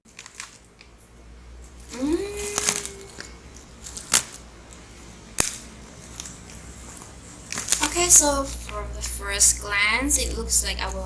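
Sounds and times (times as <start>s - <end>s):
plastic bag tearing and crinkling: 0.1s - 0.6s, 2.2s - 4.4s, 7.5s - 8.2s
rising vocal hum: 1.9s - 3.4s
sharp snap: 5.4s - 5.7s.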